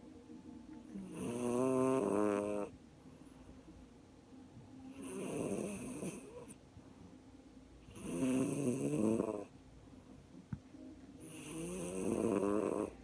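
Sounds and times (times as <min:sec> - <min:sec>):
pet snoring: 0:00.9 - 0:02.7, 0:04.9 - 0:06.6, 0:07.8 - 0:09.5, 0:11.2 - 0:13.0.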